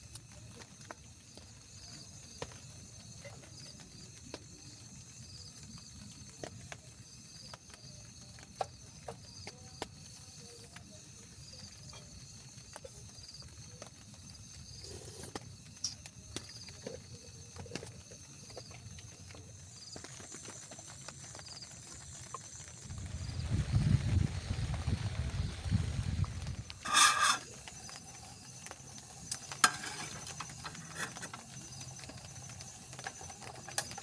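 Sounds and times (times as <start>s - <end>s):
steady high insect buzz: 19.6s - 34.0s
low rumble: 22.8s - 26.8s.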